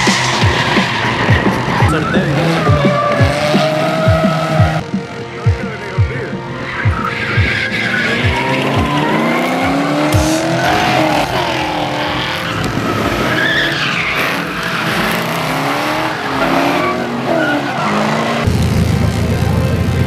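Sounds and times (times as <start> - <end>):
car engines revving: 0.0 - 20.0
loud music: 0.0 - 20.0
tyres skidding and squealing: 0.0 - 20.0.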